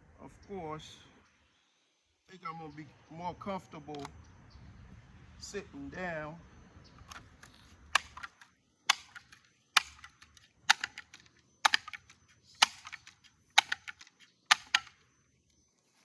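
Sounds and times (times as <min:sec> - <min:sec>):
slow footsteps clicking: 0:07.1 - 0:15.0.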